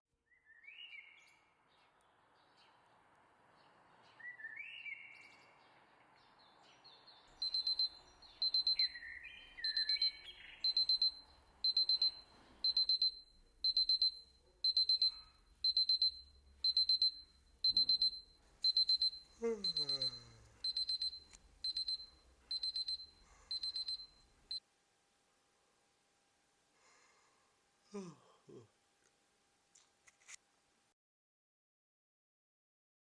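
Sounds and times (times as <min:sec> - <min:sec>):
birds chirping: 0:06.7 - 0:11.0
alarm clock beeping: 0:07.4 - 0:24.6
background hiss: 0:18.3 - 0:30.9.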